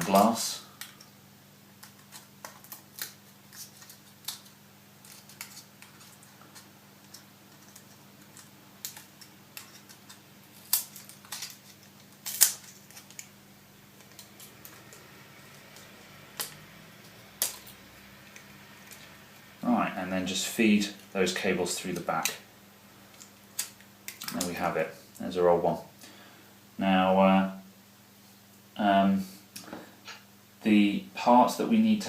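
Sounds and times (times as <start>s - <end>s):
prying tool clicking and snapping: 3.8s - 13.3s, 23.1s - 24.5s.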